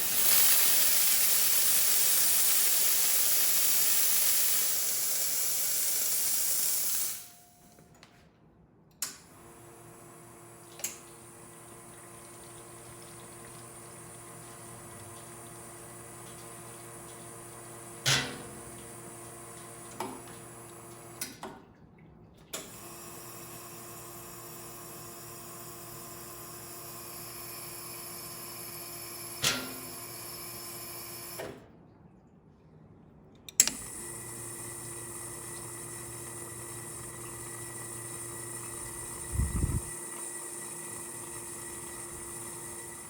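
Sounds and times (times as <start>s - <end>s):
espresso machine pump hum: 0.0s - 7.5s, 9.4s - 21.2s, 22.8s - 31.4s, 33.7s - 43.0s.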